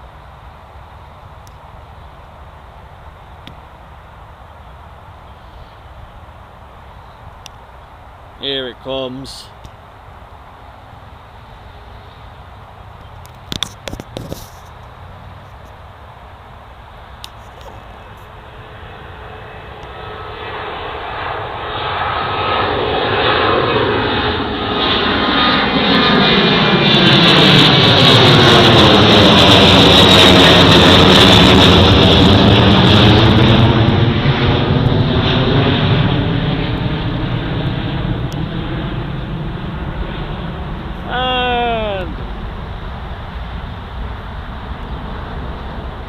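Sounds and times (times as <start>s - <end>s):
jet engines passing: 0.0s - 46.0s.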